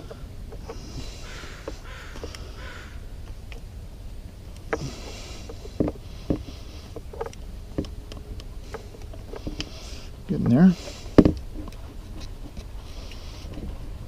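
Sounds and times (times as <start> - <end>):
soft hissing: 0.0 - 14.0.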